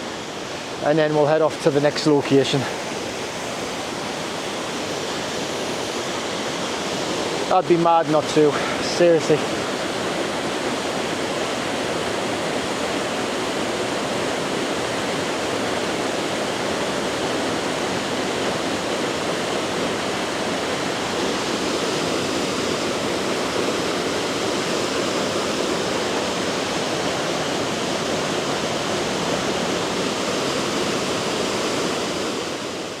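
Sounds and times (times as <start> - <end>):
waterfall roaring: 0.0 - 33.0.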